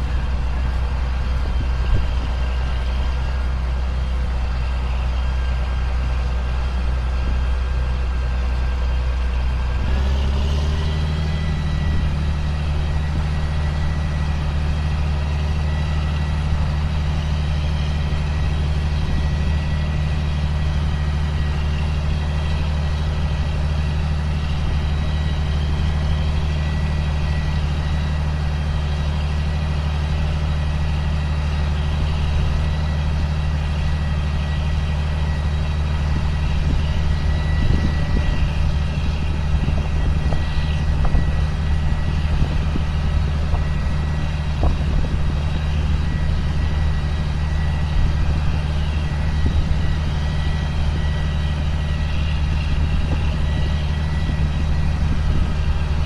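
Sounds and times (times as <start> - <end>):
diesel engine drone: 0.0 - 56.0.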